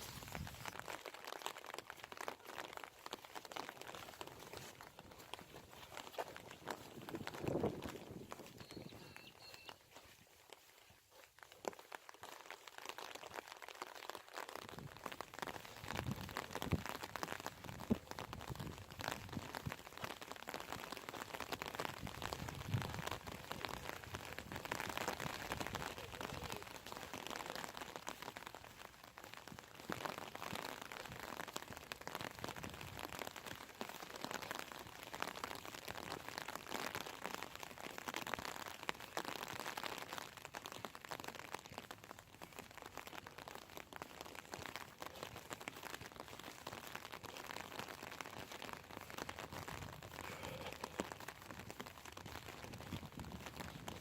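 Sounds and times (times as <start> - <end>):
rain falling: 0.0 - 54.0.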